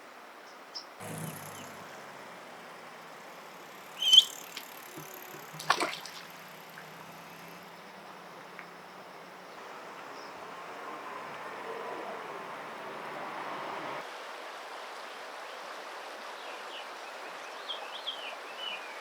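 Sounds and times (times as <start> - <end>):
duckling peeping: 1.0 - 8.6
flowing stream water: 1.0 - 16.3.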